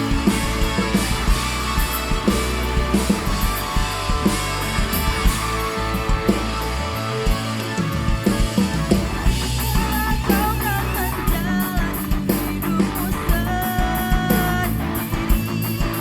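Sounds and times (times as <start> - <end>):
lead melody bending in pitch: 0.0 - 11.8
live band playing pop-rock: 0.0 - 16.0.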